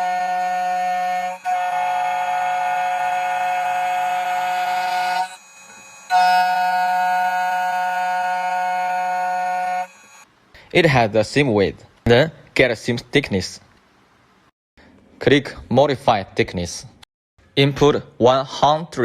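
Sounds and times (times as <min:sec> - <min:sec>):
key cutting machine motor whining: 0:03.8 - 0:10.2.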